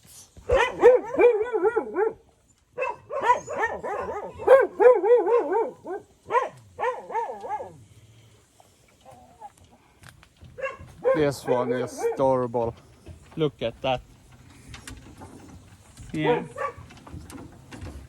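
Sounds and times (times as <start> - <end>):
dog whining and yowling: 0.5 - 2.2, 2.8 - 7.8.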